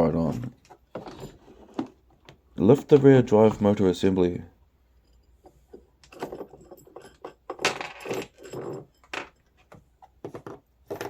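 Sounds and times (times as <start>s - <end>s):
plastic and metal parts clattering: 0.3s - 3.6s, 5.5s - 11.0s.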